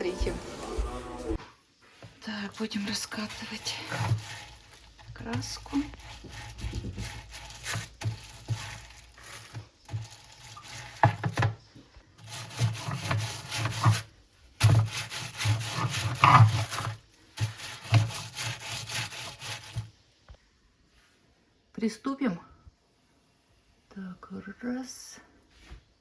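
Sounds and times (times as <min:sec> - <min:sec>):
paint roller rubbing strokes: 0:00.0 - 0:11.5, 0:12.2 - 0:19.9.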